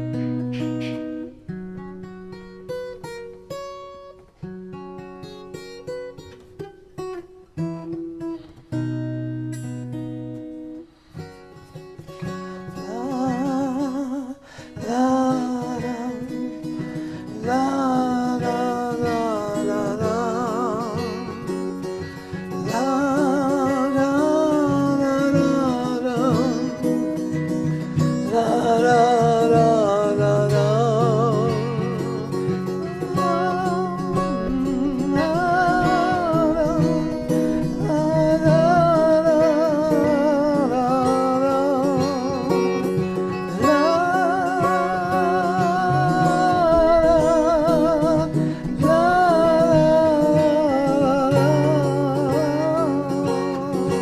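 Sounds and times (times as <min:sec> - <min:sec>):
acoustic guitar picking: 0:00.0 - 0:54.0
person singing with vibrato: 0:12.3 - 0:54.0.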